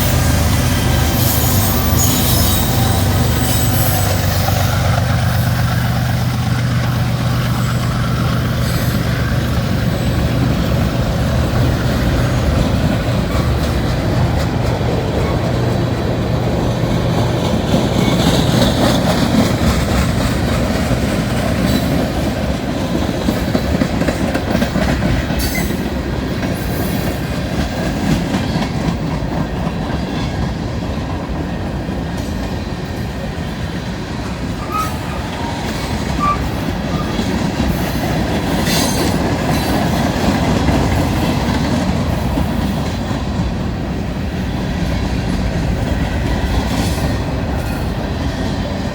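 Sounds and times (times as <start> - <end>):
freight train wheels clicking on rails: 0.0 - 48.9.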